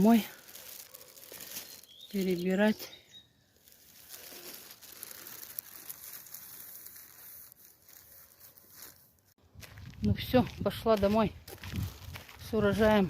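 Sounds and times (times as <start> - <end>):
faint crinkling and rustling: 0.0 - 2.6, 3.6 - 9.4.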